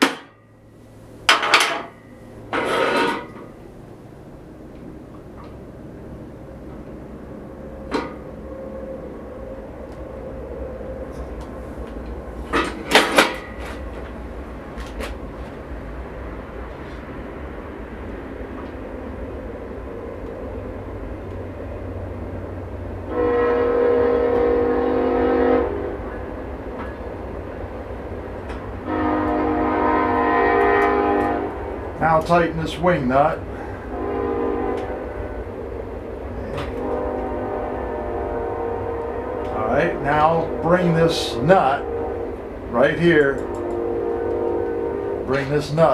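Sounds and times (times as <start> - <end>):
train rumble: 0.0 - 45.9
train horn: 23.0 - 27.0, 28.8 - 35.7, 36.3 - 45.9.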